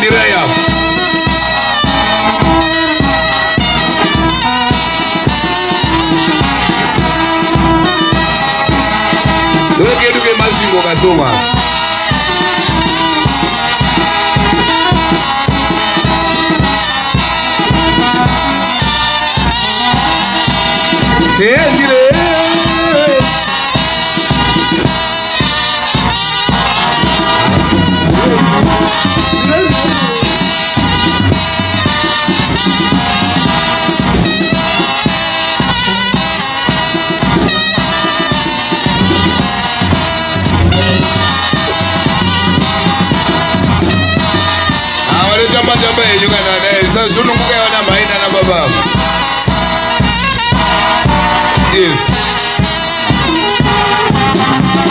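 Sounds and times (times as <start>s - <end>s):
person's voice: 0.0s - 0.8s, 9.7s - 11.5s, 21.3s - 23.4s, 26.7s - 30.6s, 40.6s - 42.4s, 44.4s - 48.9s, 51.5s - 52.4s
lively brass band music: 0.0s - 54.9s.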